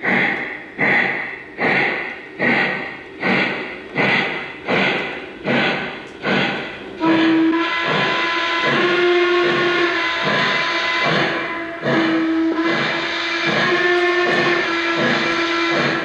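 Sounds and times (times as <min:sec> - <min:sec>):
rhythmic steam chuffs: 0:00.0 - 0:16.0
steam whistle blasts: 0:07.0 - 0:16.0.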